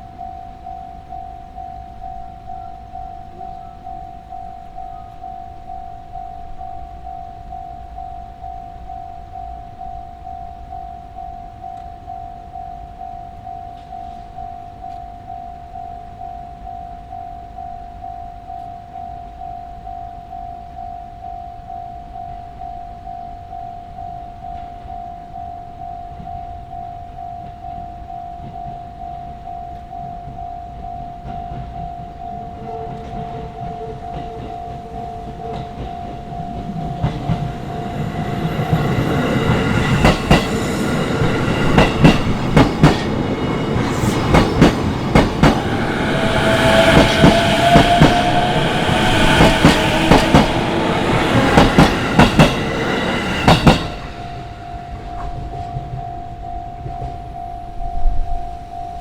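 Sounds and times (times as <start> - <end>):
level crossing alarm: 0.0 - 59.0
train wheels clacking on rails: 27.3 - 58.2.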